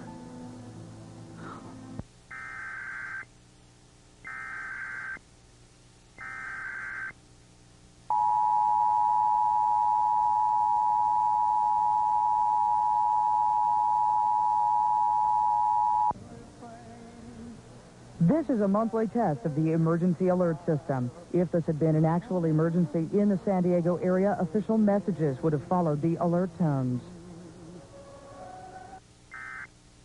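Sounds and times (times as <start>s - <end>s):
data bursts: 2.3s - 3.3s, 4.2s - 5.2s, 6.2s - 7.2s, 29.3s - 29.7s
two-tone attention signal: 8.1s - 16.1s.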